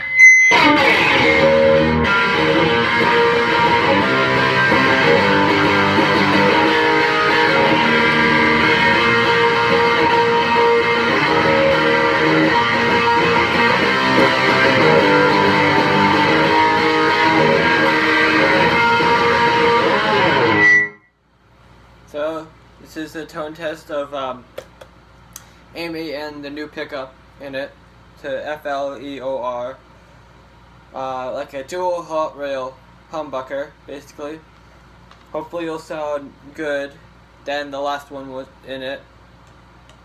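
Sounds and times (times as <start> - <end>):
electric guitar chords: 0.0 - 21.0.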